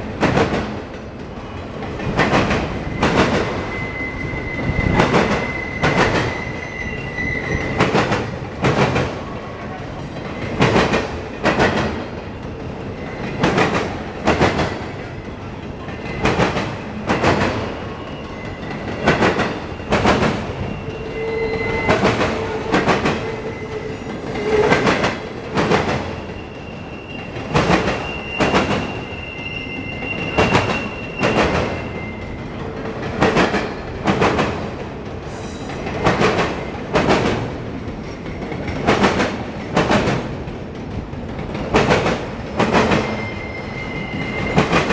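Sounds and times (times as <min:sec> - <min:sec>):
wheel squeal: 0:02.8 - 0:07.8, 0:17.8 - 0:25.2, 0:26.0 - 0:32.4, 0:43.0 - 0:44.9
train wheels clacking over joints: 0:10.0 - 0:26.6.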